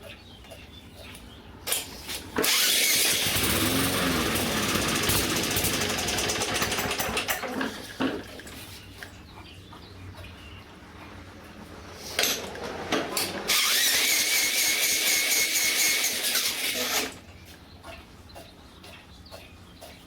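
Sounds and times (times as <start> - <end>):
electric drill whining: 2.4 - 7.3, 13.4 - 17.2
small gasoline engine running: 2.4 - 8.6, 11.2 - 17.2.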